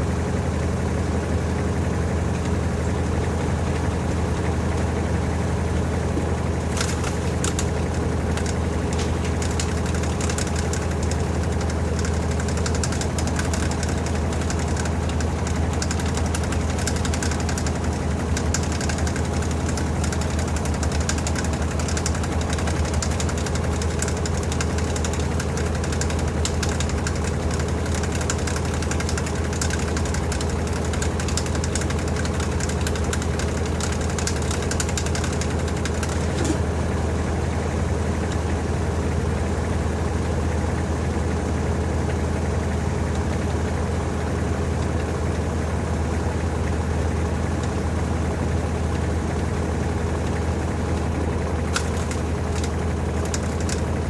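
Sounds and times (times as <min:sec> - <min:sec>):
washing machine spinning: 0:00.0 - 0:54.0
light rapid rattling ticks: 0:08.4 - 0:36.2.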